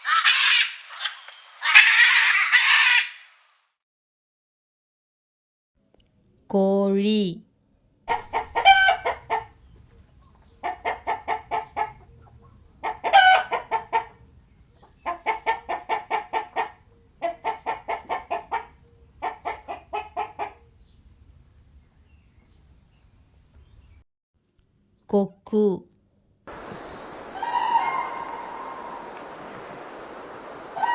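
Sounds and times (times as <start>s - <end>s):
hen clucking: 0.0s - 3.3s, 8.1s - 20.7s.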